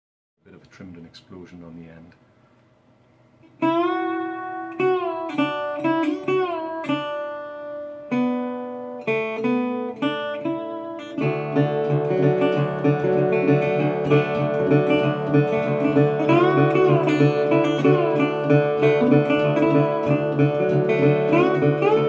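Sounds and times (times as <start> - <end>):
acoustic guitar fingerpicking: 8.1 - 22.0.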